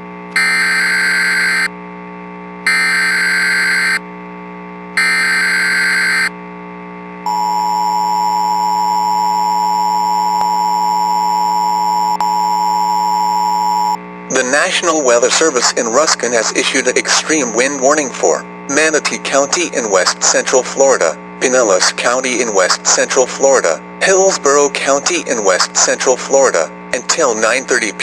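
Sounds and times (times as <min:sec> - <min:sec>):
buzzing digital data warble: 0:00.4 - 0:01.7, 0:02.7 - 0:04.0, 0:05.0 - 0:06.3
two-tone attention signal: 0:00.4 - 0:01.7, 0:02.7 - 0:04.0, 0:05.0 - 0:06.3.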